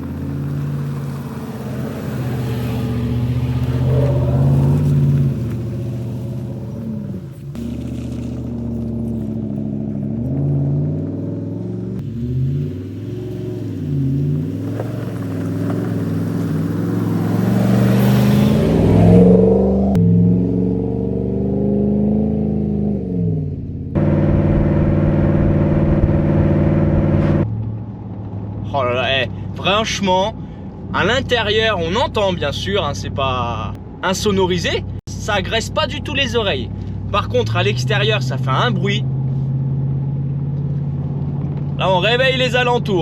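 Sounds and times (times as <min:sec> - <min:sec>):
truck exhaust revving: 0:00.0 - 0:27.5
steady exhaust drone: 0:24.0 - 0:27.4.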